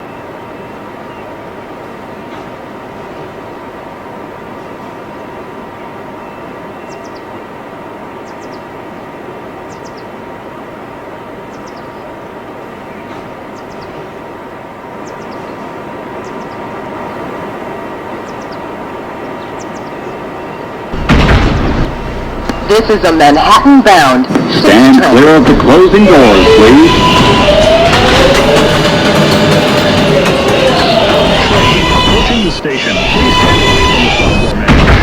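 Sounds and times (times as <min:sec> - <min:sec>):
subway car running hum: 0:00.0 - 0:35.0
thin steady whine: 0:17.1 - 0:27.7
sudden loud sound: 0:20.9 - 0:24.6.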